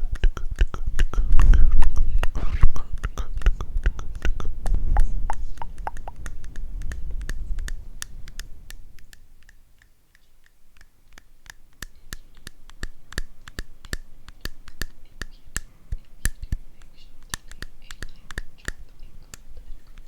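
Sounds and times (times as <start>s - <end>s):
sharp clicks: 0.5s - 20.0s
low rubbing noise: 1.4s - 3.2s.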